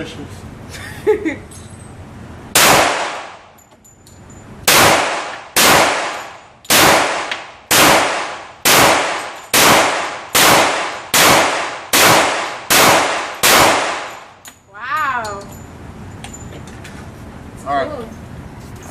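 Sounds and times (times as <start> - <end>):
pistol shots: 2.5 - 3.4, 4.6 - 14.3
ringing echo of shots: 2.6 - 3.6, 4.6 - 14.4.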